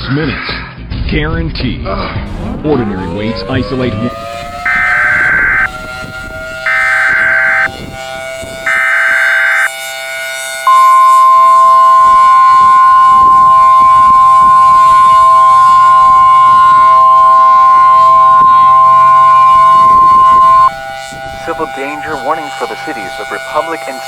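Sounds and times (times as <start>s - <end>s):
steady single-pitch attention tone: 4.1s - 24.0s
harsh data burst screeches: 4.2s - 5.8s, 6.6s - 7.8s, 8.7s - 9.7s, 10.4s - 24.0s.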